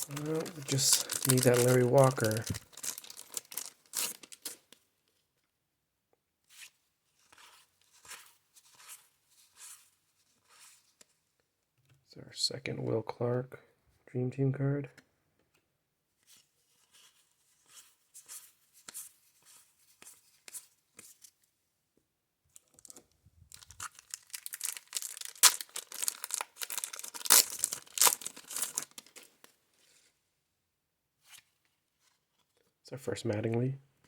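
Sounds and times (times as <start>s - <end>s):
cards being handled clicking: 0.0s - 2.6s
card pack torn and crinkled: 0.0s - 4.7s, 22.6s - 29.3s.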